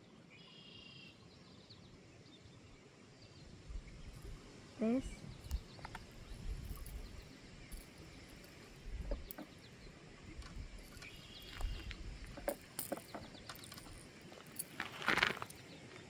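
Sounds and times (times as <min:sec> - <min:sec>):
bird chirping: 0:05.0 - 0:16.0
light clicks and knocks: 0:05.4 - 0:15.6.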